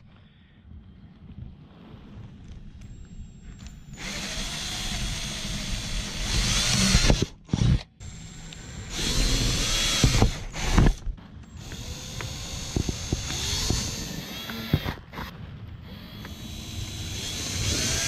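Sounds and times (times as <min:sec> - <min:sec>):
power drill drilling: 0:04.0 - 0:11.0, 0:11.6 - 0:15.3, 0:15.9 - 0:18.0.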